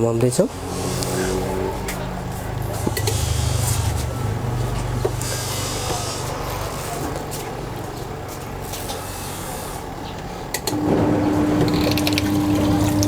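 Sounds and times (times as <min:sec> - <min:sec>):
washing machine motor humming: 0:00.0 - 0:13.0
water churning in tub: 0:00.0 - 0:13.0.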